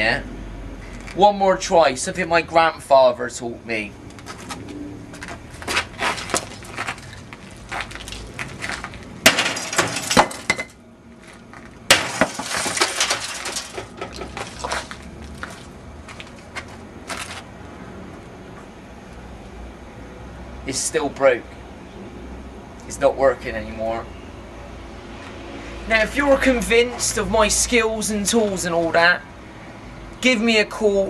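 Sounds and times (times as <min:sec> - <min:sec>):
clinking and rattling: 0:08.8 - 0:10.8, 0:11.9 - 0:14.9
loud crashes: 0:09.2 - 0:10.8, 0:11.9 - 0:14.7.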